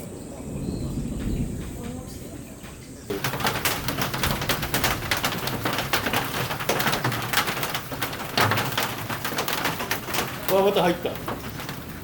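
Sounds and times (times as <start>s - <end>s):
hailstones hitting hard surfaces: 1.1s - 12.0s
heavy rain hiss: 3.1s - 12.0s.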